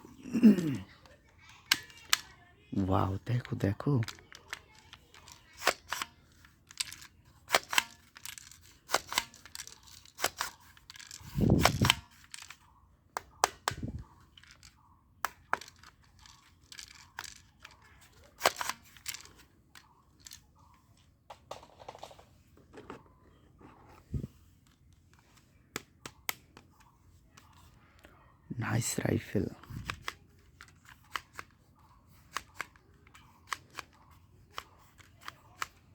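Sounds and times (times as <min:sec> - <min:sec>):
plastic toy gun clicking: 0:01.0 - 0:02.4, 0:03.1 - 0:12.6, 0:13.2 - 0:20.4, 0:29.6 - 0:35.9.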